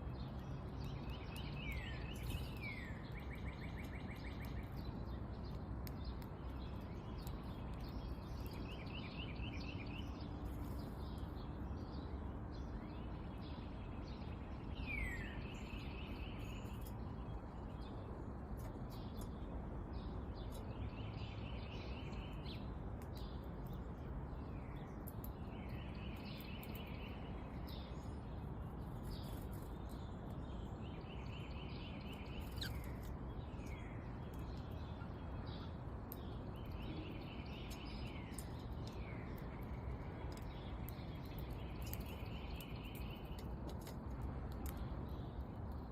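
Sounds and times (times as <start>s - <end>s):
background noise: 0.0s - 45.9s
bird chirps: 0.1s - 18.0s, 20.0s - 43.6s
songbird trilling: 30.9s - 34.1s.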